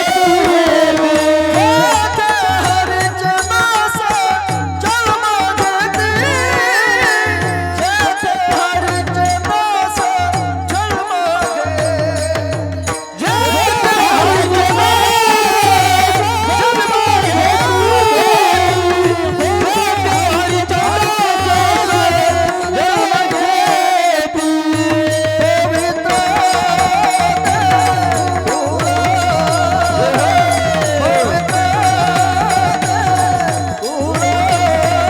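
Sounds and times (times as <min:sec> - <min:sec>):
person singing wavering melody: 0:13.2 - 0:35.0
hand drum beat: 0:24.8 - 0:35.0.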